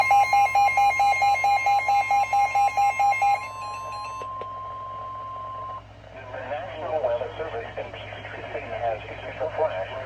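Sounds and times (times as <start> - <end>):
fast pulsing alarm beeps: 0.0 - 5.8
steady electronic alarm tone: 0.0 - 5.8.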